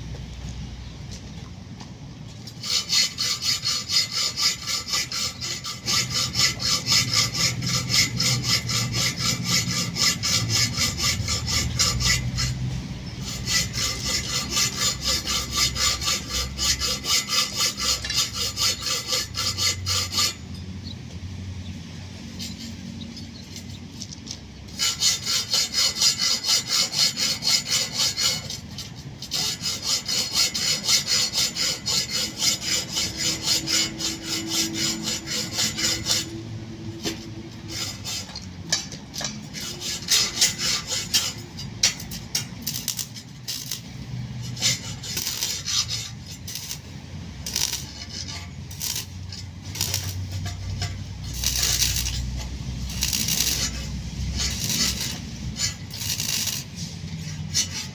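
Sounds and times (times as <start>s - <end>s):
hand saw cutting wood: 2.5s - 20.6s, 24.7s - 36.4s, 37.0s - 57.9s.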